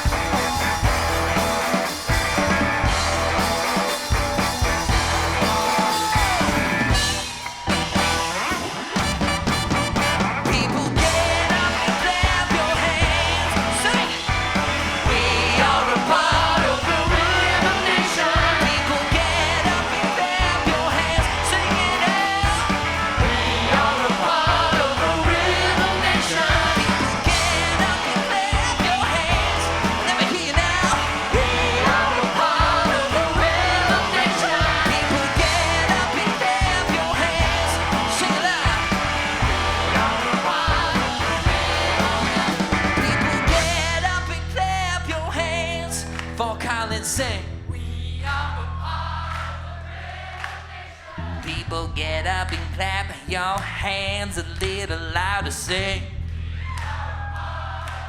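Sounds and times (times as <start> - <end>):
soul band playing live: 0.0 - 44.3
person singing: 10.4 - 47.4.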